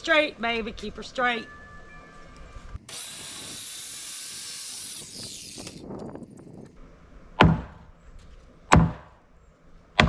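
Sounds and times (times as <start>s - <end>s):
power saw cutting timber: 2.8s - 6.7s.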